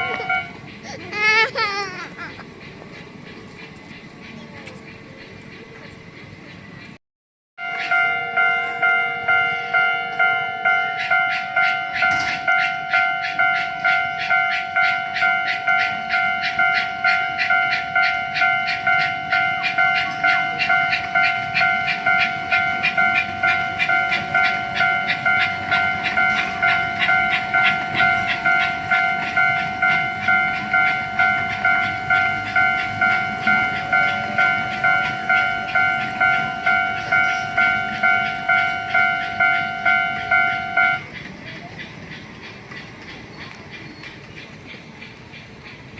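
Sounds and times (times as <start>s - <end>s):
level-crossing warning bell: 0.0s - 0.9s, 7.6s - 45.9s.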